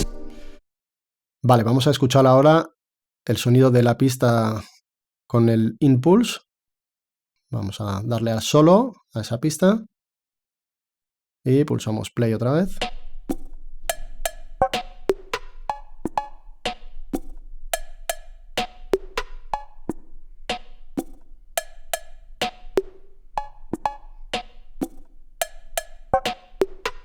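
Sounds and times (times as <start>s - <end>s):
sequenced percussion hits: 0.0s - 0.6s, 12.8s - 27.0s.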